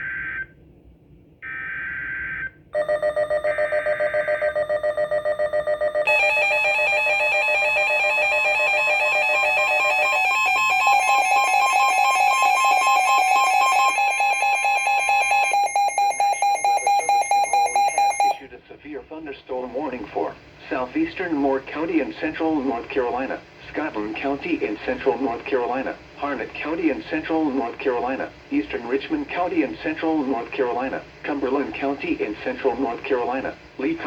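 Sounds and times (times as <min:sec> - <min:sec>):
electronic alarm beeping: 0:02.8 - 0:18.4.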